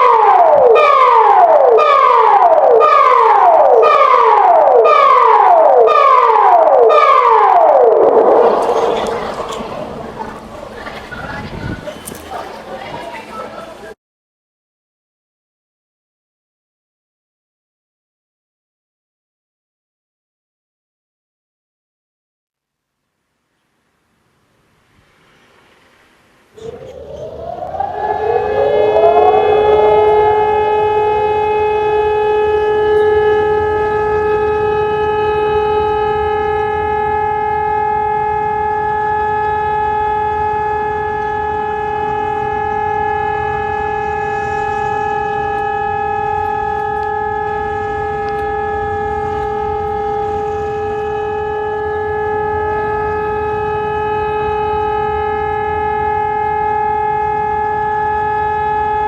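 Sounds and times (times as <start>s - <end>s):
electronic siren two-note tone: 0.0s - 10.3s, 26.6s - 59.0s.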